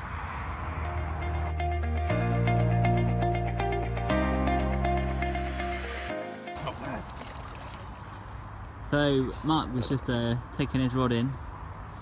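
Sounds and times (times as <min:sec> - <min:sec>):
music with bass and plucked notes: 0:00.8 - 0:06.6.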